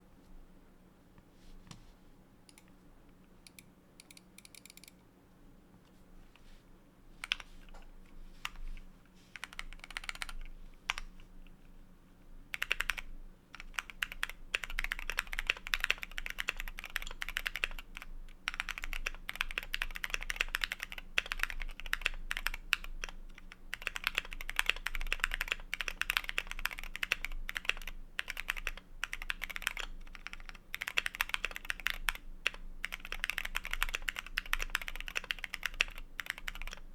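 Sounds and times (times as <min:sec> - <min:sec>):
mechanical keyboard typing: 0:03.5 - 0:05.0, 0:09.4 - 0:11.1, 0:12.5 - 0:36.9.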